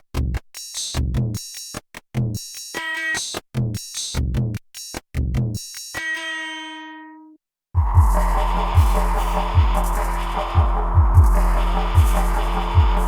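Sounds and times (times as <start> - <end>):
deep low drum hits: 7.8 - 13.0.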